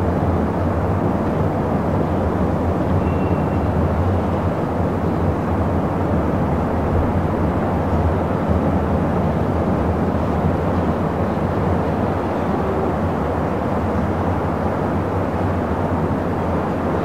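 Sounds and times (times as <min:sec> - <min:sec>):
dense traffic rumble: 0:00.0 - 0:17.0
distant brake squeal: 0:03.0 - 0:03.8.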